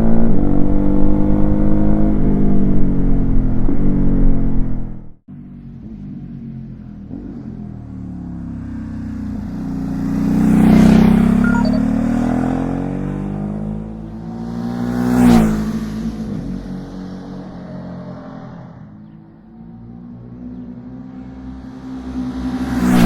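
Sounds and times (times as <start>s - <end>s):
motorcycle engine revving: 5.6s - 17.1s.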